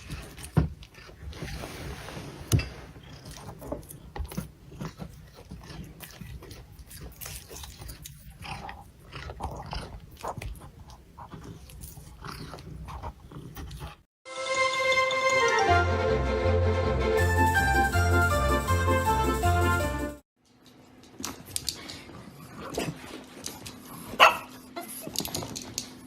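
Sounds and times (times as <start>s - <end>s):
cat gnawing with crunching clicks: 0.0s - 1.3s, 3.0s - 14.0s
music: 14.3s - 20.2s.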